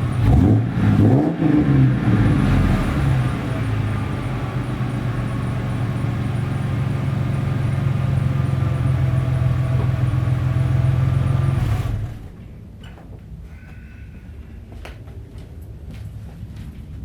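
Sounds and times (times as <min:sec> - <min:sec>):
deep car exhaust hum: 0:00.0 - 0:12.4.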